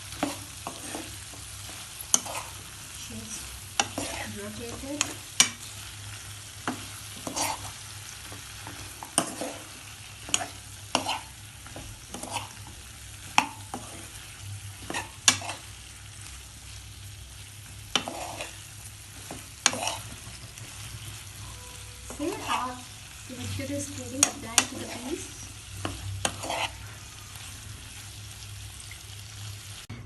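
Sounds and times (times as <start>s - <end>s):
food sizzling: 0.0s - 29.9s
utensil scraping cookware: 0.2s - 1.3s, 3.8s - 5.6s, 6.7s - 7.7s, 8.6s - 12.7s, 14.8s - 15.7s, 17.9s - 18.6s, 19.2s - 20.8s, 21.5s - 27.0s.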